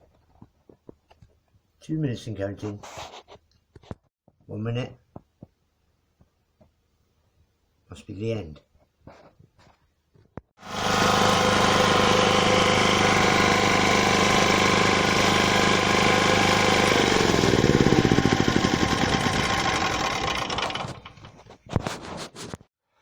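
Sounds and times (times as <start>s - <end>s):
washing machine spinning: 10.6s - 21.4s
pulsing hum of drum: 16.0s - 20.8s.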